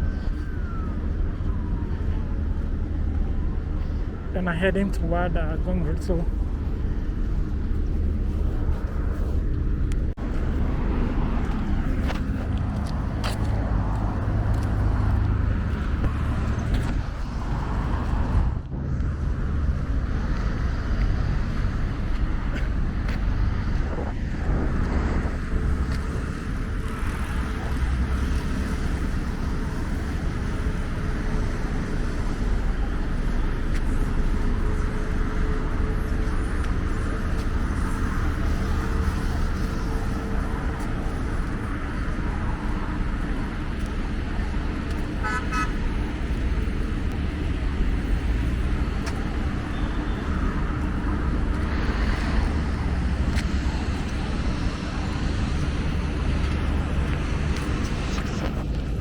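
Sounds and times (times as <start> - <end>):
vehicles passing with low rumble: 0.0 - 59.0.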